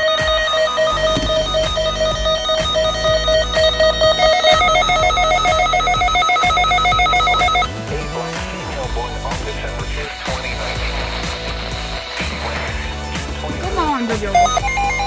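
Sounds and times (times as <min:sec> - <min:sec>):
electronic alert tone beeping: 0:00.0 - 0:07.7, 0:13.6 - 0:15.0
two-tone pulsing alert: 0:00.0 - 0:07.7, 0:13.6 - 0:15.0.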